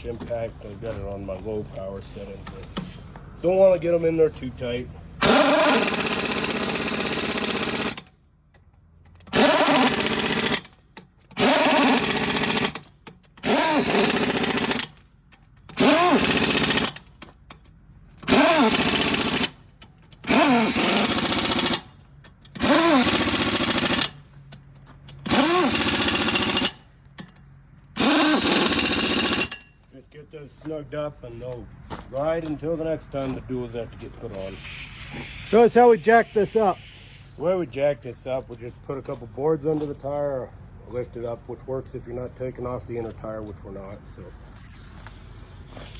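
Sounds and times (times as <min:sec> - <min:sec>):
impact wrench bursts: 0:04.0 - 0:08.1, 0:09.3 - 0:15.0, 0:15.7 - 0:17.3, 0:18.2 - 0:19.6, 0:20.2 - 0:21.9, 0:22.5 - 0:24.2, 0:25.2 - 0:26.9, 0:28.0 - 0:29.7, 0:34.3 - 0:37.6, 0:44.9 - 0:45.9.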